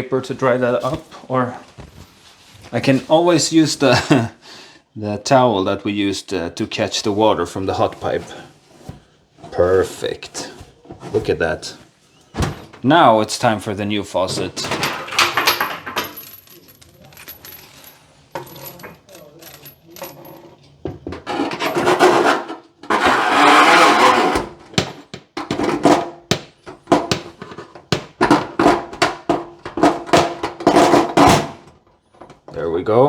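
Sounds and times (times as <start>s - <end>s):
dense rustling: 0.0s - 3.8s, 6.8s - 20.5s
metal parts clinking: 14.3s - 22.0s.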